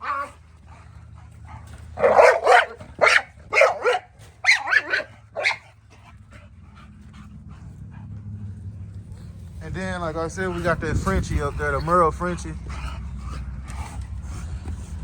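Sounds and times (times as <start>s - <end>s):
dog barking: 2.0s - 5.7s.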